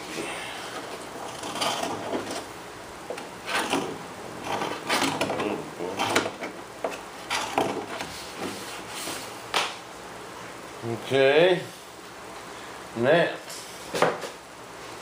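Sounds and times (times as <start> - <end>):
tools scraping and knocking on workbench: 0.7 - 2.5, 3.1 - 9.7.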